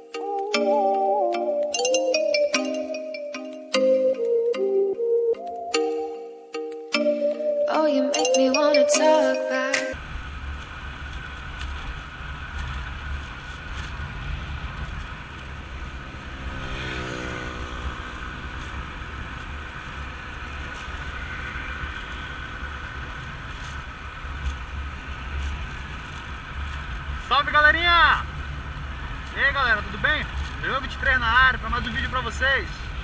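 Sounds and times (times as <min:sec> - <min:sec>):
music: 0:00.0 - 0:10.0
motor vehicle engine rumbling: 0:10.0 - 0:33.0.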